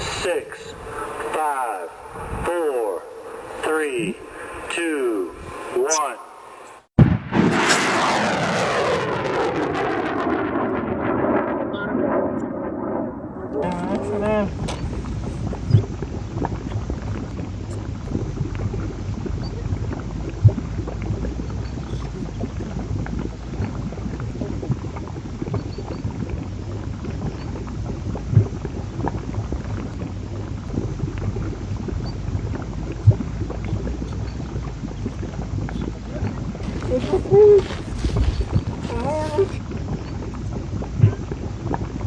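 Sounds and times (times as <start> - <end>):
water churning and bubbling: 13.7 - 42.0.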